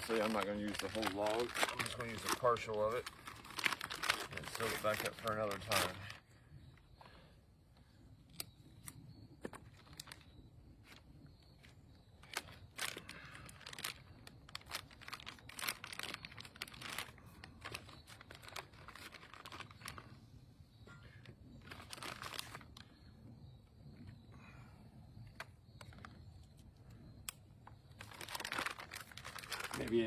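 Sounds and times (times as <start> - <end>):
wrapper crinkling and tearing: 0.0 - 6.2, 9.6 - 10.3, 12.2 - 20.1, 21.6 - 22.8, 27.9 - 30.0.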